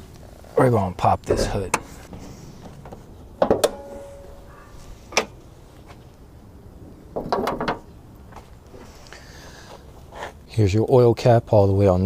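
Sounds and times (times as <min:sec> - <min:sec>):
knocks: 0:01.3 - 0:02.1.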